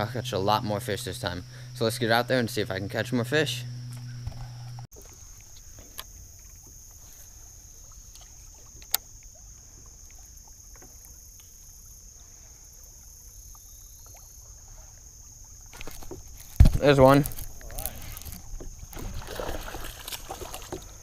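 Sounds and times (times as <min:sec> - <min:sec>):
high-pitched hum: 0:00.0 - 0:04.9
small ticks and clicks: 0:08.1 - 0:09.4.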